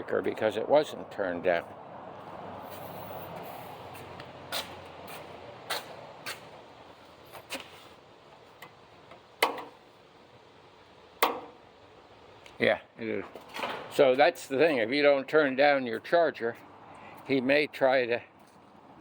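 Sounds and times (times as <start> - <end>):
sharp clicks and knocks: 8.3 - 9.8, 11.2 - 11.6.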